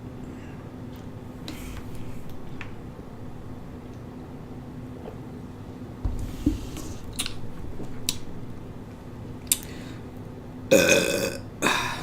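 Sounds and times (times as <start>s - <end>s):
loud burp: 10.7s - 12.0s.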